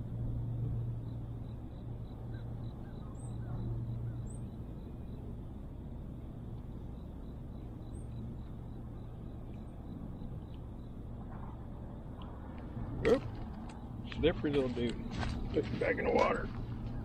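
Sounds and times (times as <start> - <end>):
steady low drone: 0.0 - 17.0
birds chirping: 1.4 - 5.4, 6.0 - 17.0.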